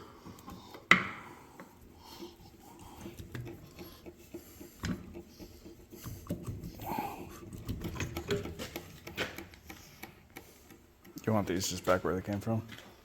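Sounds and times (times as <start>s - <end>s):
metal parts and tools clicking: 2.8s - 12.5s.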